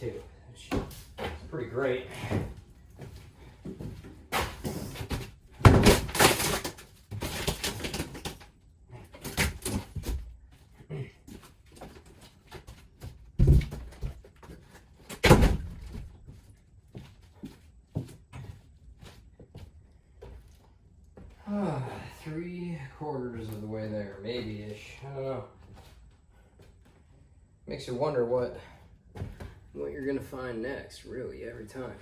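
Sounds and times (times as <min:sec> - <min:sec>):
wood tearing loose: 0:04.3 - 0:08.4.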